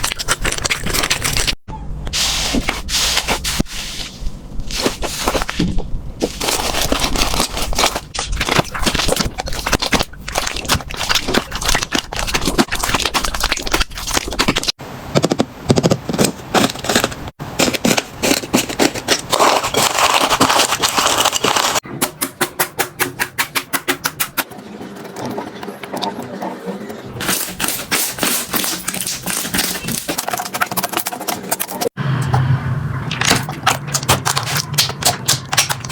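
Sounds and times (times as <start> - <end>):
slime crackling and popping: 33.2 - 35.9.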